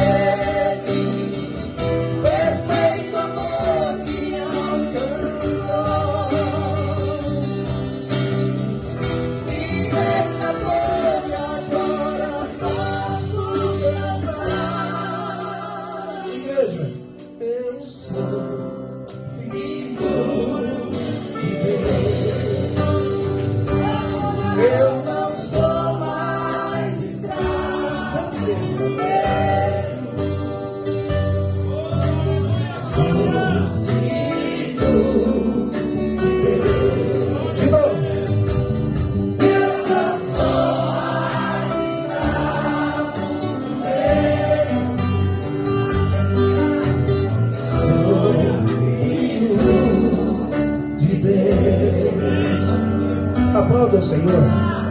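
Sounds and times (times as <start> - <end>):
gospel group singing: 0.0 - 54.9
guitar: 0.0 - 54.9
bass line: 18.2 - 54.9.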